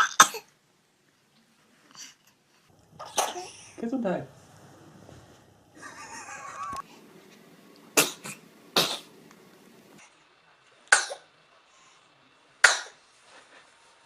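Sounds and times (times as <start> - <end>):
baby sneezing: 12.6 - 13.0.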